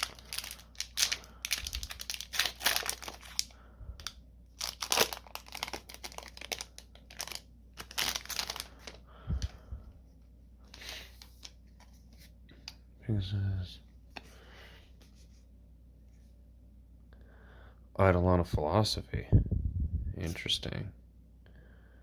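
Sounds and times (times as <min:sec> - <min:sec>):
plastic wrapper crinkling: 0:00.0 - 0:09.6.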